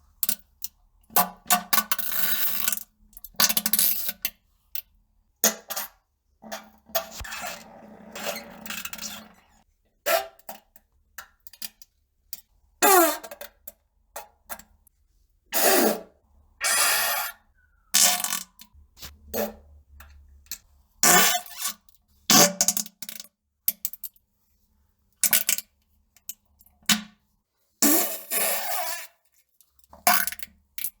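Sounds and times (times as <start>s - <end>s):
farts: 7.1s - 9.6s.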